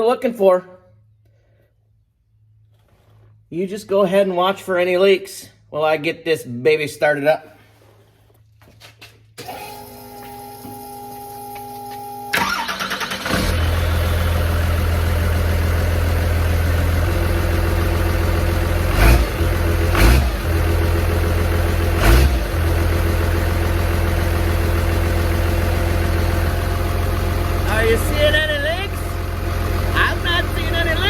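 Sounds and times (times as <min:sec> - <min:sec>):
diesel engine starting and idling: 0:09.4 - 0:31.0
engine revving surges: 0:18.7 - 0:21.0, 0:21.8 - 0:22.8.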